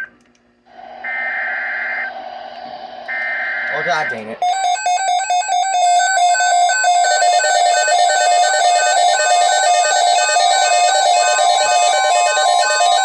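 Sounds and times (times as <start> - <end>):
electronic alarm stepping in pitch: 3.0 - 13.0.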